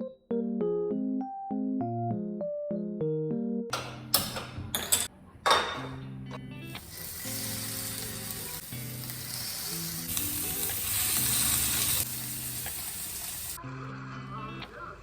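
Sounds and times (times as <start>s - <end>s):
soft keyboard music: 0.0s - 12.8s
food sizzling in a pan: 6.8s - 13.6s.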